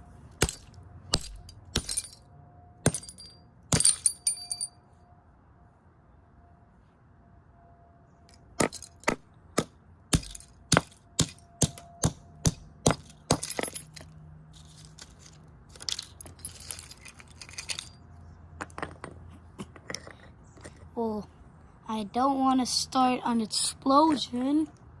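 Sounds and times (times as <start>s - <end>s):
hammer striking alarm clock: 10.2s - 13.0s
broken pieces rattling: 12.9s - 18.0s.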